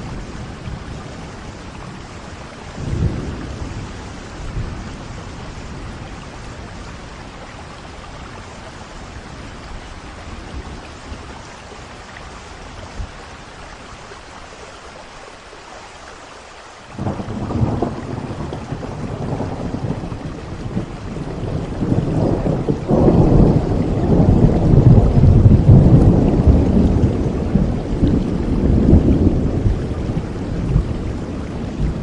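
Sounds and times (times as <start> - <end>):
thunder rumbling: 0.0 - 11.5, 16.9 - 32.0
steady rain: 0.0 - 32.0.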